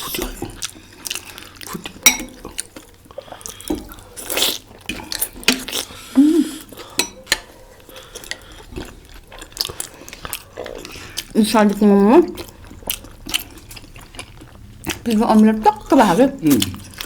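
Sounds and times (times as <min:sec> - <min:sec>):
wet mouth eating sounds: 0:00.0 - 0:17.0
cutlery clicking on dishes: 0:02.0 - 0:02.4, 0:07.0 - 0:07.5.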